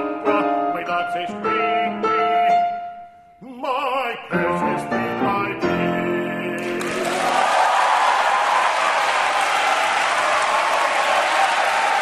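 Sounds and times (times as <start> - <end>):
piano accompaniment: 0.0 - 3.2, 4.3 - 7.5
baritone singing with vibrato: 0.0 - 7.2.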